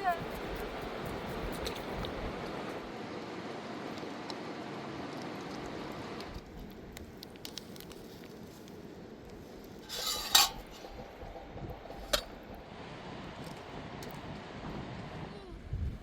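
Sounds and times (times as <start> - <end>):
scraping rustle: 9.7 - 12.6.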